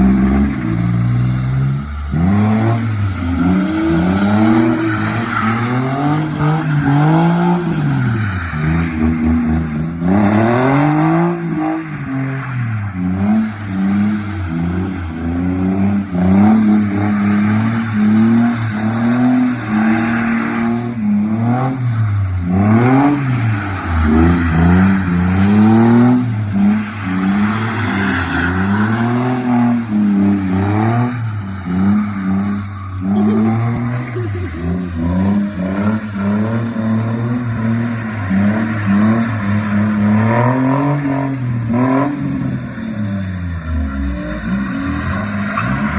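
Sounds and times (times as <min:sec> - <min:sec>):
car engine revving: 0:00.0 - 0:45.9.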